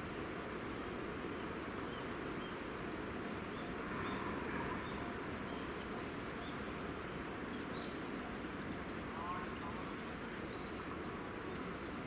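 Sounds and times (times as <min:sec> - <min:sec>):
small birds chirping: 0:07.5 - 0:12.0.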